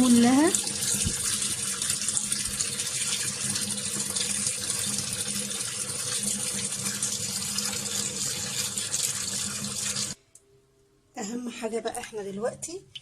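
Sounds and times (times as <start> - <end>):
tap water running: 0.0 - 10.2.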